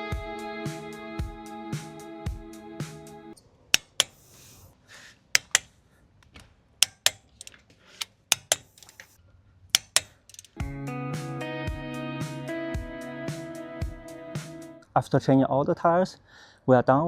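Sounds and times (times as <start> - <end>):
torque wrench clicking: 3.7 - 4.7, 5.4 - 5.7, 6.8 - 10.6
faint handling noise: 5.4 - 9.2, 9.8 - 10.6.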